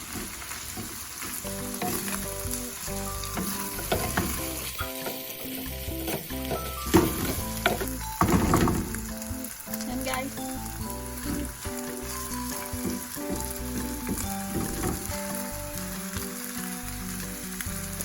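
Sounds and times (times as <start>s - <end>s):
meat sizzling in a frying pan: 0.0s - 18.0s
utensil knocking and scraping pan: 3.3s - 9.0s, 11.2s - 15.1s.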